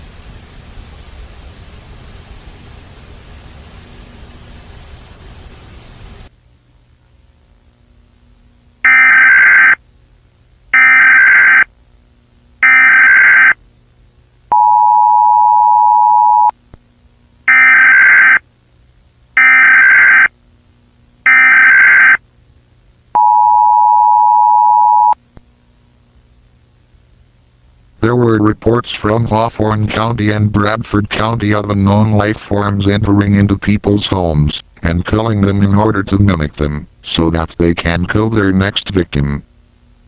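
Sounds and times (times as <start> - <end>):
two-tone attention signal: 8.9 - 9.8, 14.5 - 16.5, 23.2 - 25.2
harsh electronic bursts: 21.3 - 22.2.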